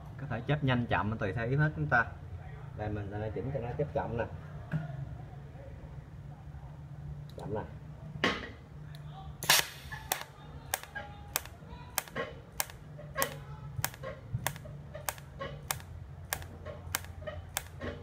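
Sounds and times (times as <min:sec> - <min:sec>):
welder pulser clicking: 0:09.4 - 0:18.0.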